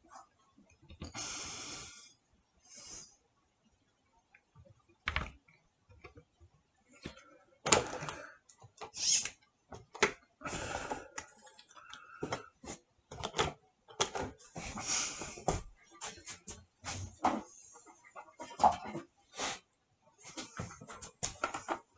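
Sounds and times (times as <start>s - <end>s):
objects knocking and clicking: 20.4s - 21.9s.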